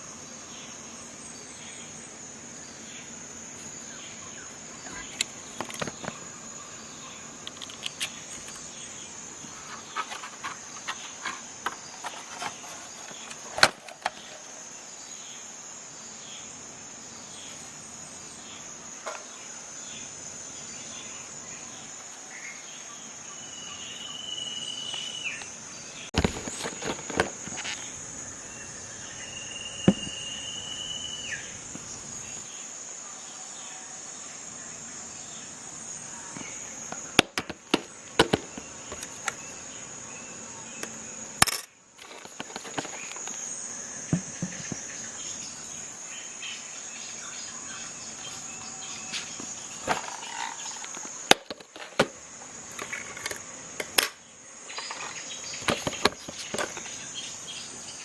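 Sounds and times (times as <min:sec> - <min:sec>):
high-pitched hiss: 0:00.0 - 0:58.0
clicks of plastic parts handled: 0:05.0 - 0:06.2, 0:07.5 - 0:08.7, 0:09.6 - 0:14.4, 0:41.4 - 0:43.4, 0:54.8 - 0:56.9.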